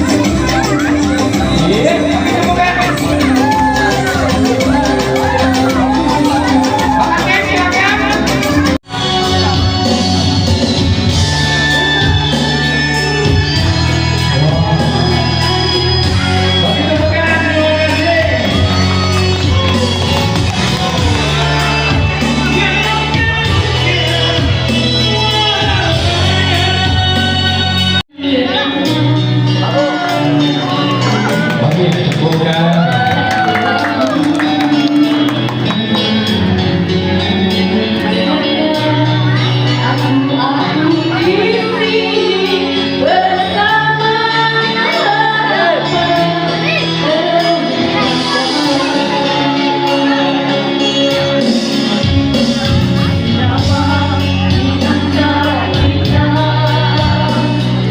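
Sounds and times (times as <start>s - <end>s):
instrumental backing: 0.0s - 57.9s
person singing: 0.0s - 57.9s
sustained bass notes: 0.0s - 57.9s
woman singing: 23.4s - 31.3s, 36.0s - 50.7s, 53.0s - 57.9s.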